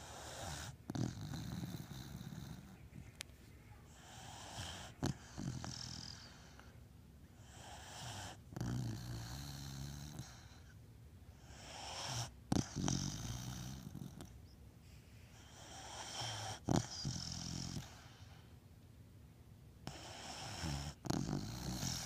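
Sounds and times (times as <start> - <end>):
dog snoring: 0.0 - 2.8, 3.9 - 6.7, 7.4 - 10.8, 11.4 - 14.4, 15.4 - 18.5, 19.8 - 22.0.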